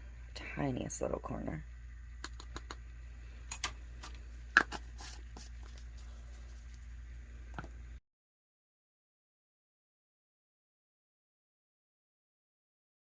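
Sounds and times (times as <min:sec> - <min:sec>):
steady low hum: 0:00.0 - 0:08.0
clicks and taps of small objects: 0:02.2 - 0:02.8.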